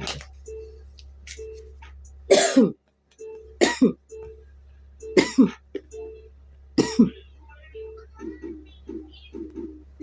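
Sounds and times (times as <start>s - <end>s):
person coughing: 2.3s - 2.8s, 3.6s - 4.0s, 5.2s - 5.8s, 6.8s - 7.2s.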